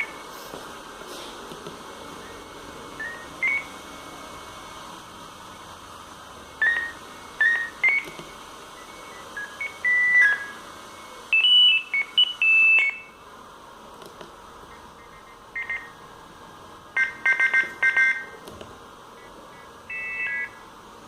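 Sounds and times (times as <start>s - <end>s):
beeping phone ringtone: 15.0s - 16.0s, 17.0s - 18.3s, 19.9s - 20.6s.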